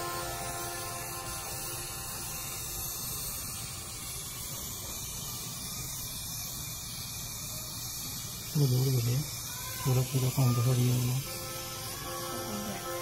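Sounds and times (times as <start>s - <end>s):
steady hiss: 0.0s - 13.0s.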